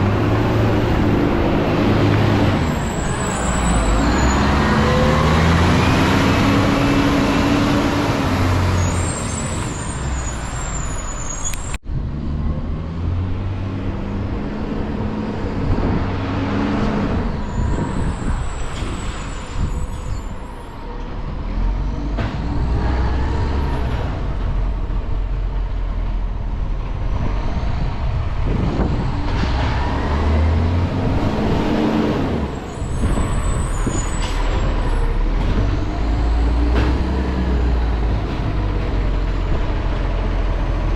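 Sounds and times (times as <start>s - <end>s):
garbage truck engine revving: 0.0s - 10.3s.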